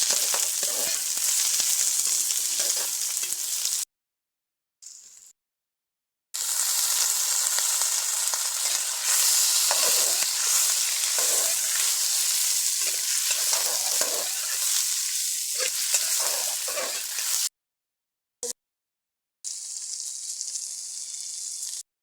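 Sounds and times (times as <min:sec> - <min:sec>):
spatula scraping a pan: 0:00.0 - 0:03.5, 0:08.6 - 0:17.5
food sizzling in hot oil: 0:00.0 - 0:03.9, 0:04.8 - 0:05.3, 0:06.4 - 0:17.5, 0:19.5 - 0:21.8.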